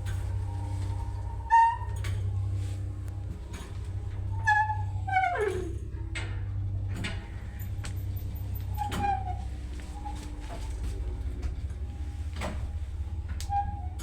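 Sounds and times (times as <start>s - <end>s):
elevator squeaking: 0.0s - 14.0s
steady low hum: 0.0s - 14.0s.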